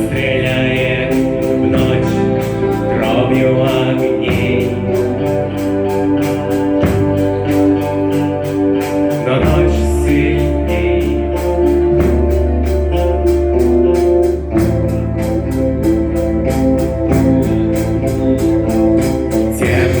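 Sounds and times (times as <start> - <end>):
bass line: 0.0 - 20.0
drum and cymbal beat: 0.0 - 20.0
electric organ chords: 0.0 - 20.0.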